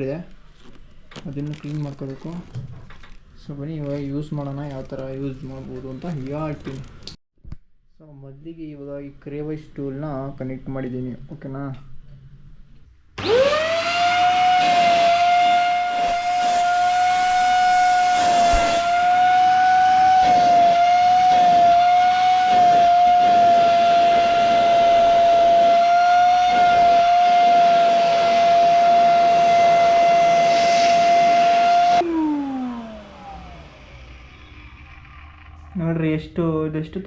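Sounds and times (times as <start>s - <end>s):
handheld vacuum cleaner whining: 13.2s - 35.8s.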